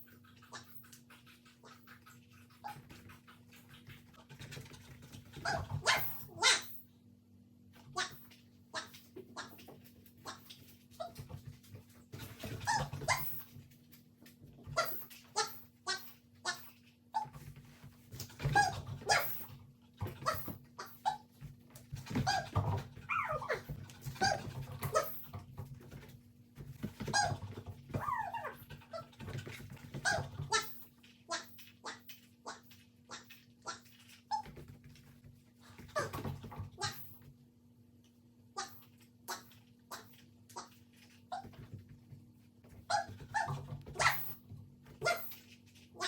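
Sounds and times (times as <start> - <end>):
puppy whining: 12.2 - 13.5, 22.0 - 25.4, 27.0 - 34.8, 42.7 - 46.0
puppy barking: 23.1 - 23.6, 42.9 - 44.4.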